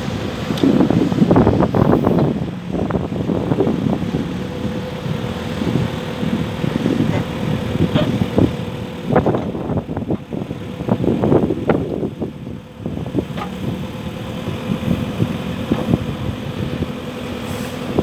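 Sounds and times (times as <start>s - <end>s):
diesel engine running: 0.0s - 18.0s
knocks and clanks: 6.9s - 10.3s, 13.2s - 13.7s.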